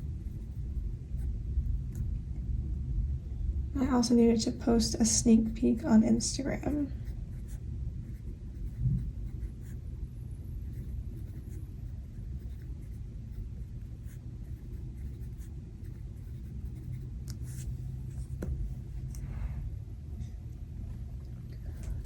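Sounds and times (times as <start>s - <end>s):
pen scratching on paper: 0.0s - 1.3s, 6.9s - 9.8s, 10.6s - 19.2s
steady low rumble: 0.0s - 22.0s.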